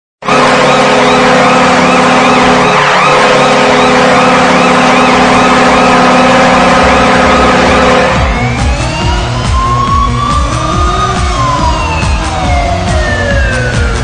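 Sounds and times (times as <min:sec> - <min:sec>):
goal horn blast: 0:00.2 - 0:08.4
warbling siren-like tone: 0:00.2 - 0:14.0.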